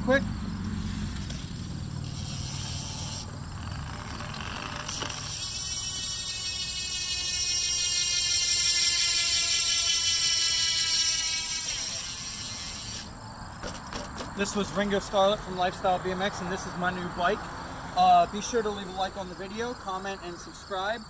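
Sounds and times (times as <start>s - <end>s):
bicycle hub freewheel clicking: 0.6s - 13.9s.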